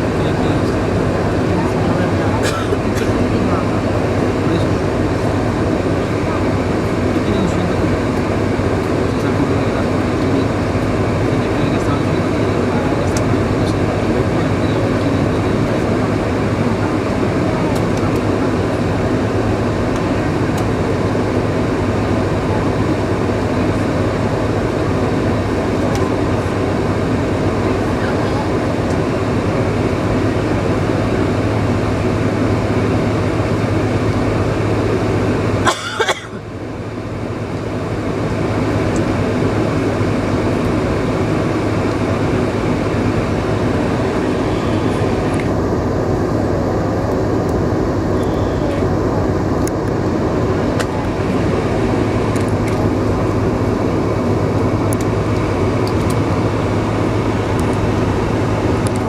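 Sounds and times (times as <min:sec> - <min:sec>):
airplane cabin engine hum: 0:00.0 - 0:59.0.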